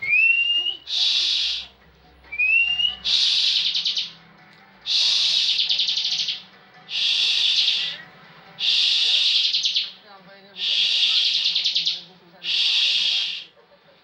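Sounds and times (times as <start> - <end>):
bird rising whistle: 0.1 - 1.7, 2.3 - 4.1, 4.9 - 8.0, 10.6 - 13.5
buzzy pulsed bird rattling: 3.0 - 4.2.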